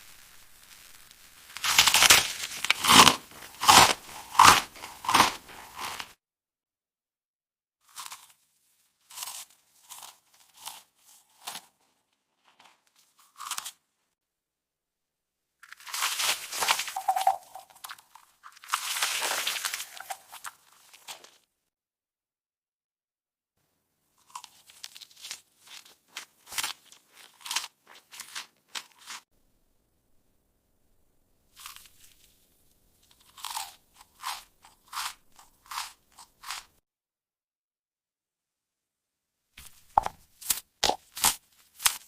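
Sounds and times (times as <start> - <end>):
crunchy chewing of fruit: 1.6 - 6.2, 7.8 - 13.9, 15.6 - 21.4, 24.2 - 29.3, 31.5 - 36.8, 39.6 - 42.0.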